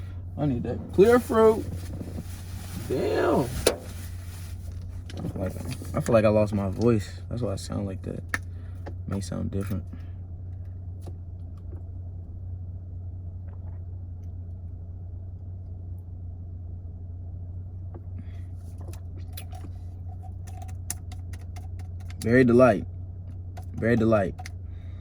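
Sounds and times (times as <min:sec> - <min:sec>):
car engine idling: 0:00.0 - 0:12.9
rustling: 0:00.8 - 0:06.1.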